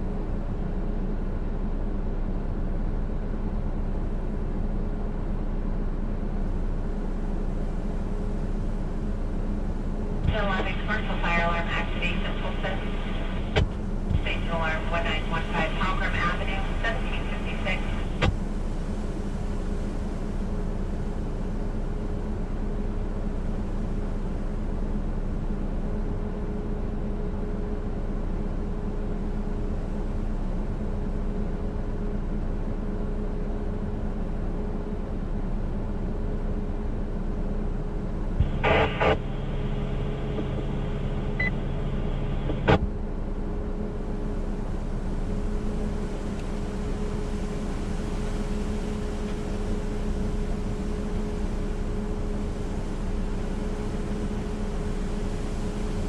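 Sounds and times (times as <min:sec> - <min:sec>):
steady hiss with low hum: 0:00.0 - 0:56.0
radio clicks: 0:13.2 - 0:14.3.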